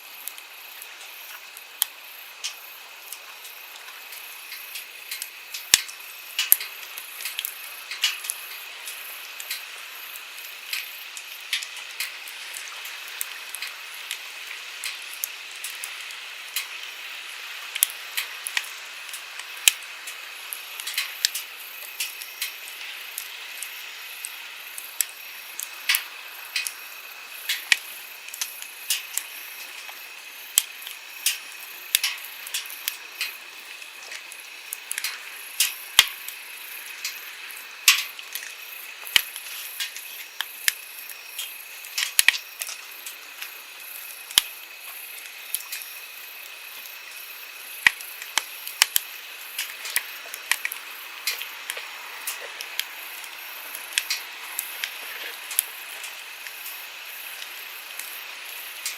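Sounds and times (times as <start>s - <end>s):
campfire crackling and popping: 0.1s - 58.9s
flowing stream: 49.2s - 58.9s.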